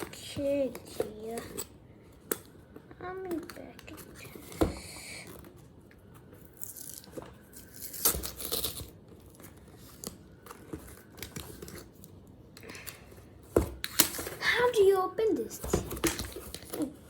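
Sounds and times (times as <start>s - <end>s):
packaging rustling and scraping: 3.2s - 12.2s
packaging tearing: 6.5s - 10.2s.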